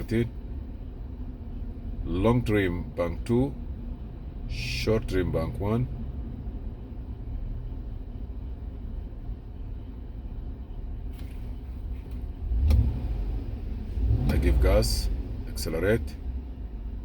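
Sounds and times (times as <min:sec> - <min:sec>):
car engine idling: 0:00.0 - 0:17.0
engine revving: 0:12.4 - 0:16.4.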